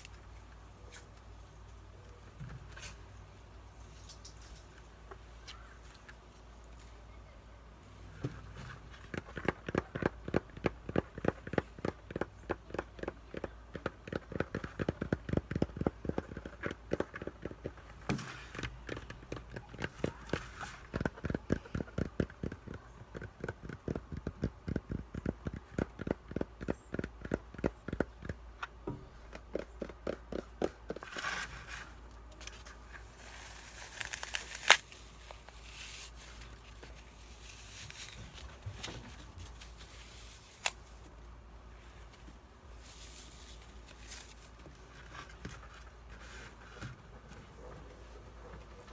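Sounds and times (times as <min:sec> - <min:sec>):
scratching and crackling: 0:29.4 - 0:41.1.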